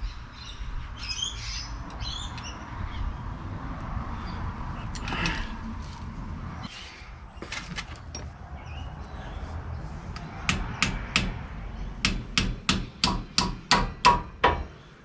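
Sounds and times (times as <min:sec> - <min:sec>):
hammer striking metal: 0:12.0 - 0:14.8.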